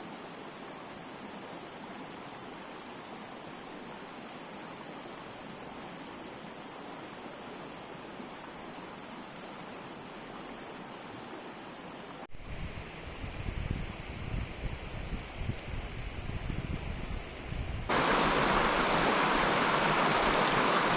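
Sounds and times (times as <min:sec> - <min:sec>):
mountain stream rushing: 0:17.9 - 0:20.9.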